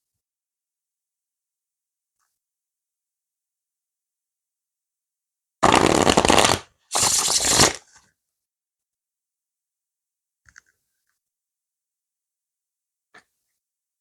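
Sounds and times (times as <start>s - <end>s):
card deck shuffling: 5.6s - 7.8s.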